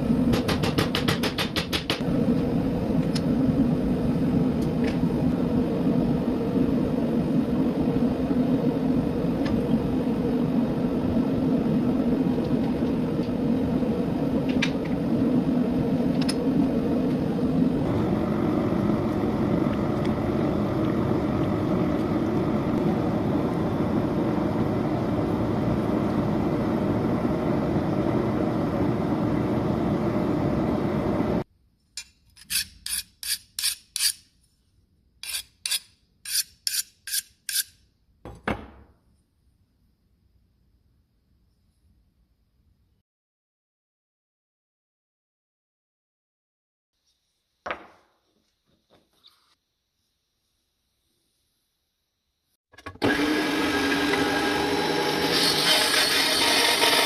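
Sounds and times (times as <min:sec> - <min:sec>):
shop machine whirring rumble: 0:01.9 - 0:31.5, 0:52.8 - 0:57.0.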